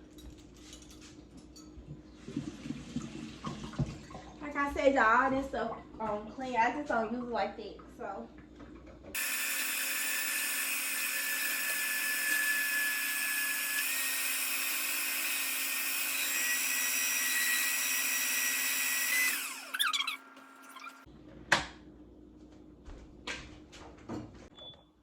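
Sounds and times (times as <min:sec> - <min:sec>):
kitchen appliance motor whining: 0:09.2 - 0:21.1.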